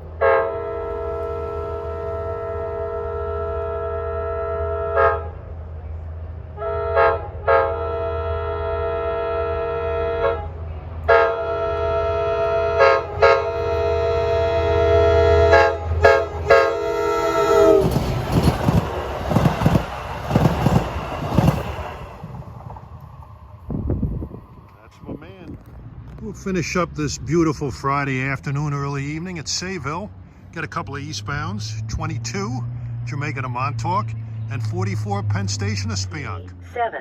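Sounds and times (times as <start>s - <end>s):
locomotive air horn blasts: 0.0s - 5.5s, 6.5s - 18.8s
diesel engine rumble: 0.0s - 37.0s
train wheels clacking on rails: 17.1s - 23.1s.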